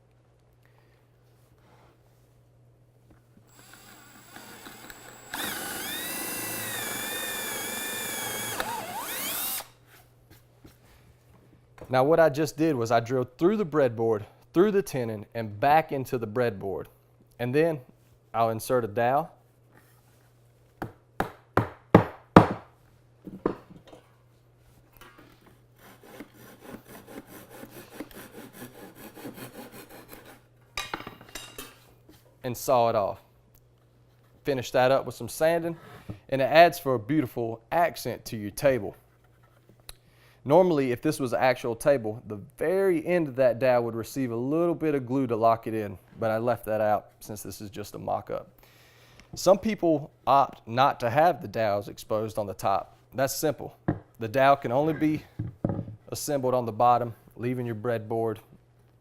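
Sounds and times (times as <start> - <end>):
hand saw cutting: 3.5 - 9.7, 25.8 - 30.4
power drill boring wood: 3.5 - 9.7.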